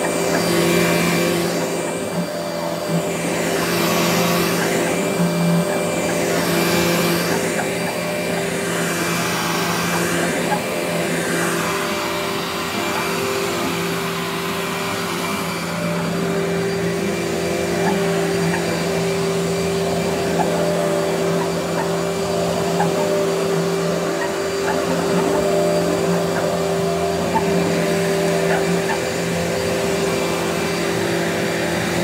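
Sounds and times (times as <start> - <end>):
vacuum cleaner running: 0.0 - 32.0.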